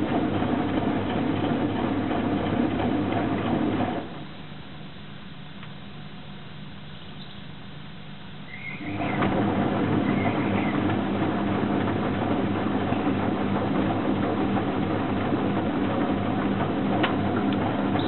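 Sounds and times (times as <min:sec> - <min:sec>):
washing machine rushing noise: 0:00.0 - 0:04.5, 0:08.5 - 0:18.0
washing machine humming: 0:00.0 - 0:18.0.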